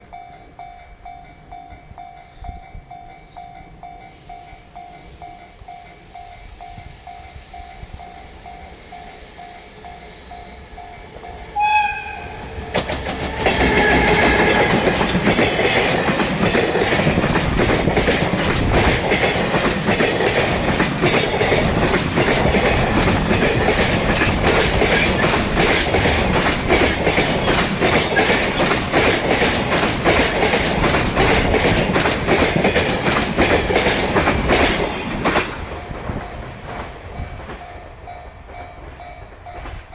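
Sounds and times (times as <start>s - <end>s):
level-crossing warning bell: 0.0s - 36.8s
freight train passing: 0.0s - 39.9s
locomotive horn blast: 11.6s - 12.6s, 13.3s - 15.1s.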